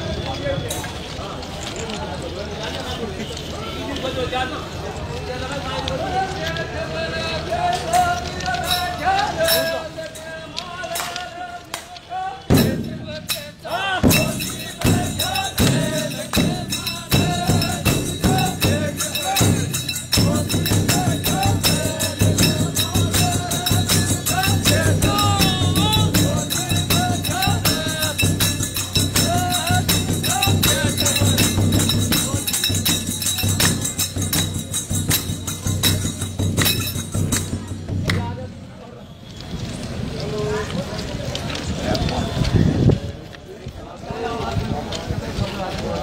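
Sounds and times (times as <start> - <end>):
person singing folk song: 5.6 - 32.8
jingling cymbals: 8.6 - 10.4, 12.5 - 37.9
fast hand percussion: 12.5 - 38.7.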